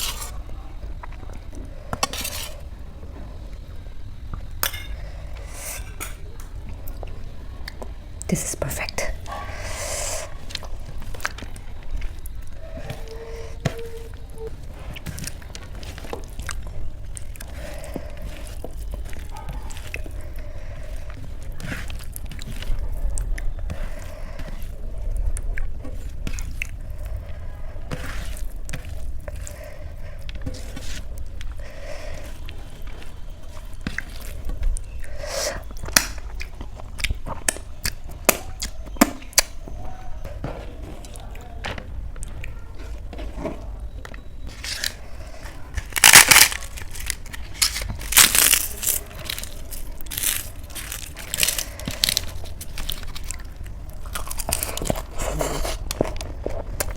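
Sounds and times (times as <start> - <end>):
chewing: 0.0 - 56.9
loud crunching bites: 45.8 - 56.9.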